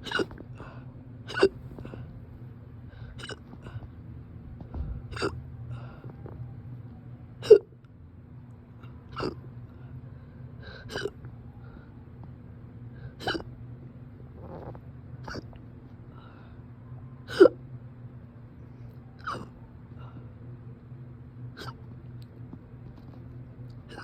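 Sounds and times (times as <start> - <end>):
person hiccuping: 0.0 - 0.4, 1.3 - 1.6, 3.2 - 3.5, 5.1 - 5.4, 7.4 - 7.7, 9.1 - 9.4, 10.9 - 11.2, 13.2 - 13.5, 15.2 - 15.6, 17.3 - 17.6, 19.2 - 19.5, 21.6 - 21.8.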